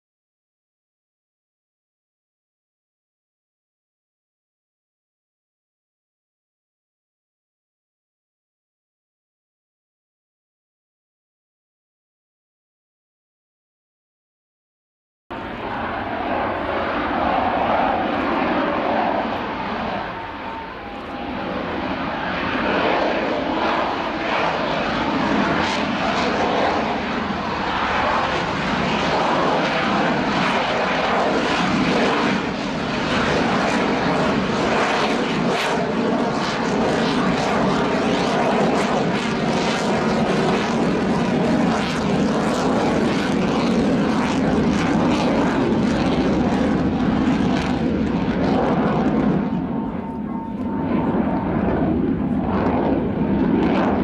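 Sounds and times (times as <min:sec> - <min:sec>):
jet fighter roaring past: 0:15.3 - 0:54.0.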